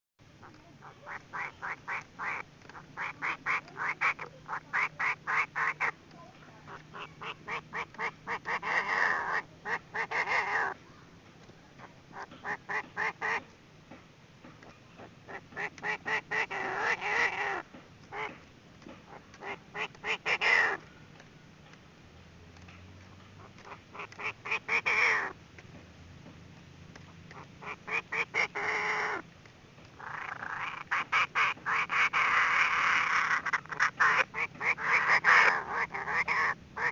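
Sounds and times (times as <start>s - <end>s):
harsh bird chattering: 0.4s - 6.0s, 6.6s - 10.8s, 11.8s - 13.5s, 14.8s - 20.8s, 23.4s - 25.4s, 27.1s - 29.2s, 30.0s - 36.9s
bird clucking calls: 0.4s - 10.8s, 11.7s - 13.6s, 14.4s - 20.9s, 23.0s - 25.4s, 27.0s - 29.3s, 29.9s - 36.9s.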